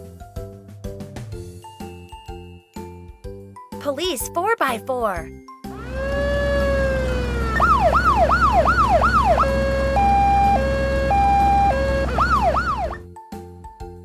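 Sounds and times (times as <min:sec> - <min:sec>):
electronic police siren: 0:05.8 - 0:13.0
low engine rumble: 0:05.8 - 0:13.0.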